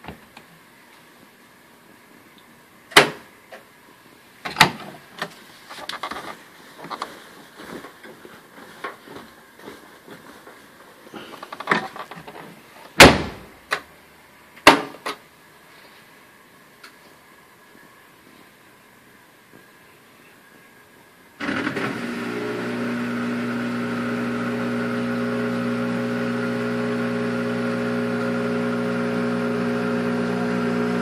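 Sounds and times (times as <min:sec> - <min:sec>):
faint steady whine: 0:00.0 - 0:21.5.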